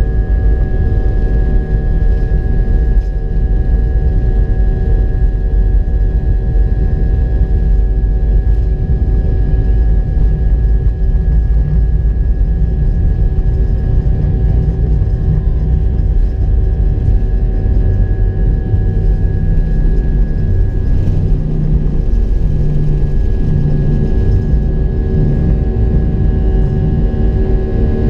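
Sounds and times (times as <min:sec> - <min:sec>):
jet engines rumbling in cabin: 0:00.0 - 0:28.0
jet engine whining tones: 0:13.2 - 0:28.0.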